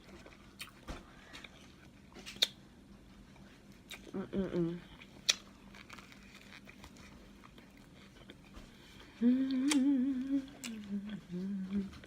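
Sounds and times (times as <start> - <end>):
soft chewing: 0.0 - 12.0
woman humming mmm: 9.2 - 12.0
mouth smacks: 9.5 - 9.9.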